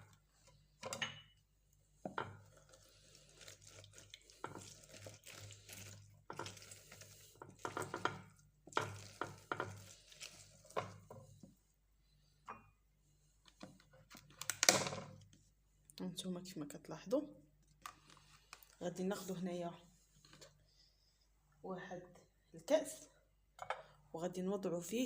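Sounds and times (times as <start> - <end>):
citrus juicer rubbing and knocking: 6.2 - 11.6.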